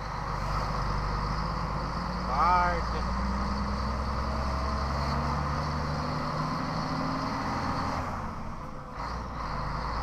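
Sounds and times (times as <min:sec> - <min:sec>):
truck diesel engine drone: 0:00.0 - 0:10.0.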